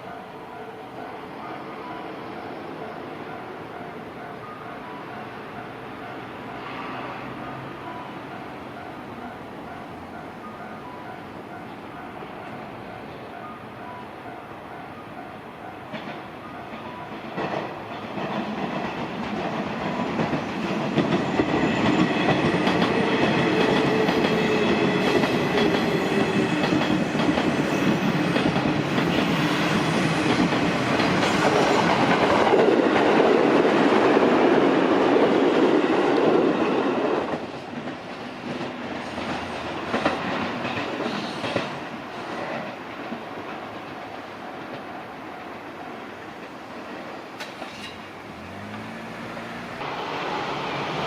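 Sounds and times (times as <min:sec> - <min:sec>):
train wheels clattering over rails: 0:15.8 - 0:51.0.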